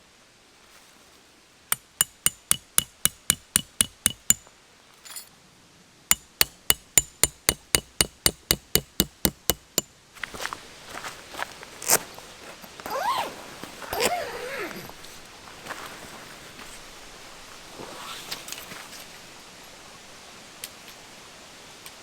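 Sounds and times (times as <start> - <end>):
hammer striking metal tent peg: 1.7 - 4.4, 6.1 - 9.9
rustling: 10.2 - 19.4.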